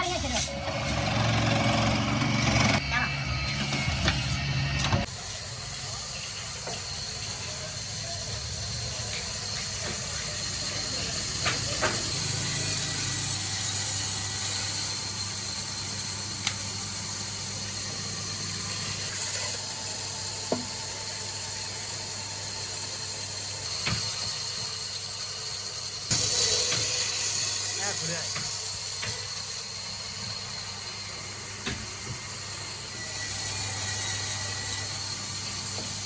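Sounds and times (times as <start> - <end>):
hissing machine noise: 0.0 - 36.0.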